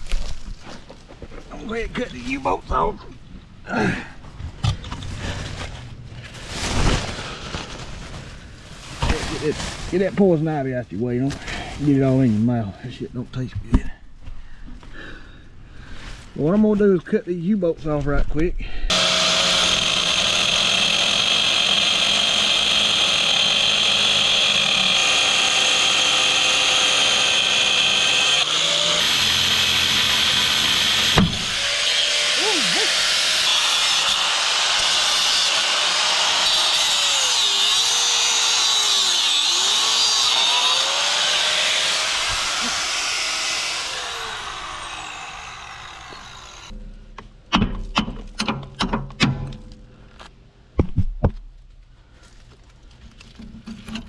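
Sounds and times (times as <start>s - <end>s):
reciprocating saw cutting steel: 18.9s - 46.8s.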